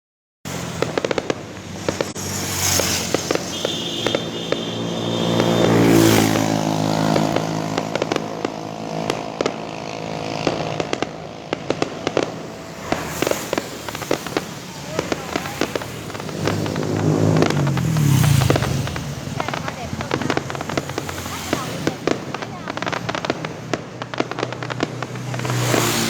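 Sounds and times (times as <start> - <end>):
firework whistle: 0.5 - 9.3, 11.6 - 23.4
engine hum: 0.5 - 26.0
firecrackers popping: 0.5 - 26.0.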